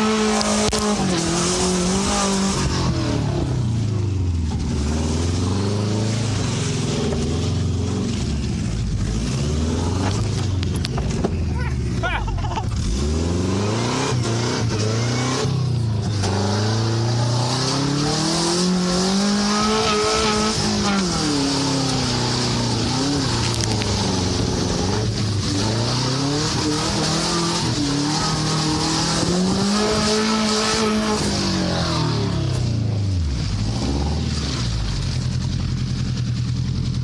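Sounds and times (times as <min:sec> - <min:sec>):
car engine revving hard: 0:00.0 - 0:11.2, 0:11.8 - 0:35.0
spinning tyres hissing: 0:04.4 - 0:32.4.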